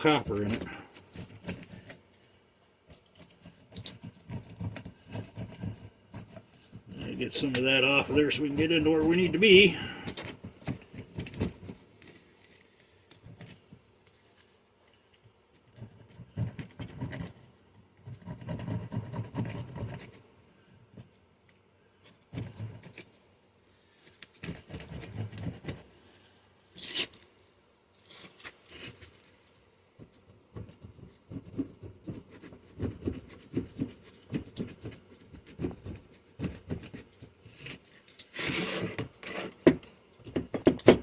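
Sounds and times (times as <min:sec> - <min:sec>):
hand tool scraping and clicking: 0:00.0 - 0:02.1, 0:02.9 - 0:17.4, 0:32.8 - 0:41.0.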